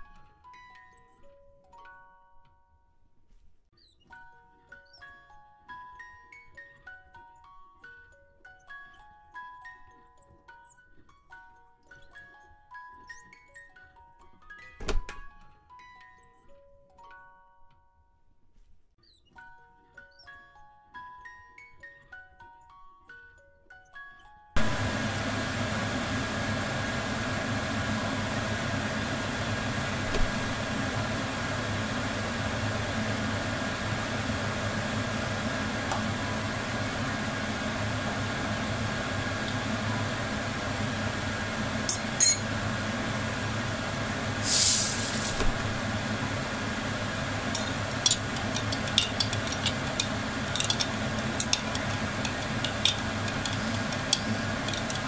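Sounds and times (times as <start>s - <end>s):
steady background hum: 24.6s - 55.0s
kitchenware clinking: 41.9s - 42.5s, 47.6s - 55.0s
brief hiss: 44.4s - 45.6s.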